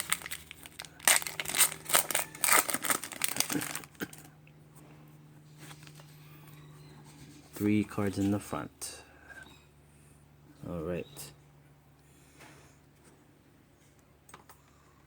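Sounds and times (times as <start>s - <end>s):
foil wrapper crinkling: 0.0s - 4.3s
faint steady hum: 0.0s - 15.0s.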